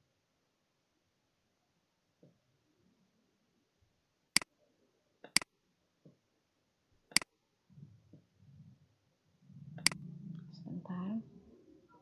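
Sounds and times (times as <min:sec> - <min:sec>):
computer mouse clicks: 0:05.2 - 0:05.5, 0:09.8 - 0:10.0
faint low murmur: 0:07.6 - 0:12.0.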